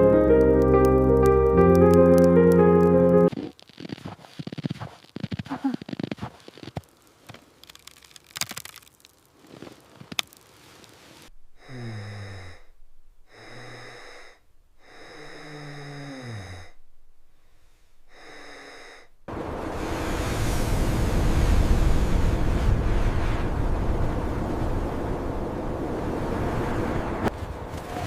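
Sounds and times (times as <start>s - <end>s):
faint clicks and rustling: 3.3s - 11.3s
wheezing groans: 11.6s - 16.8s, 17.4s - 19.1s.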